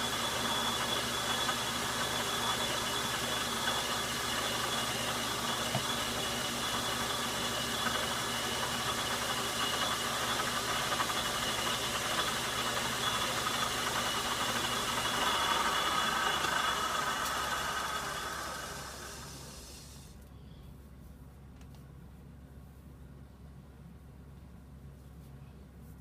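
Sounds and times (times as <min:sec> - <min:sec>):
metal lathe whirring: 0:00.0 - 0:20.1
cutting tool hissing on metal: 0:00.0 - 0:20.2.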